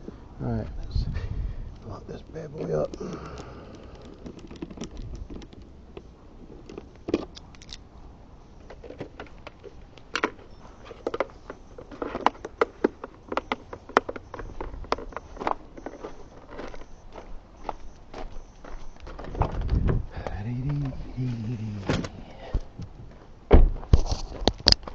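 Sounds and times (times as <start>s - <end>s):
equipment box clicks and rattles: 2.6s - 7.8s, 8.6s - 17.0s.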